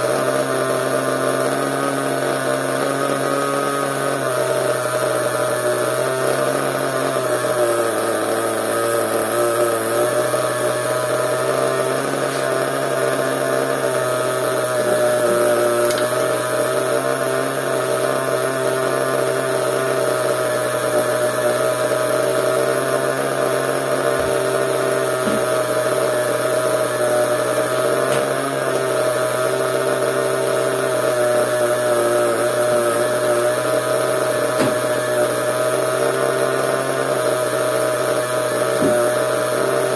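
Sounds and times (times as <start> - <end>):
small nitro engine buzzing: 0.0 - 39.9.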